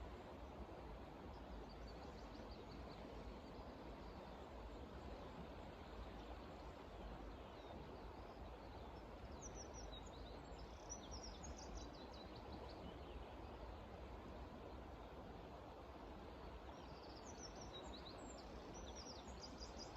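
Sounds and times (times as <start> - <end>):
faint outdoor background noise: 0.0 - 19.9.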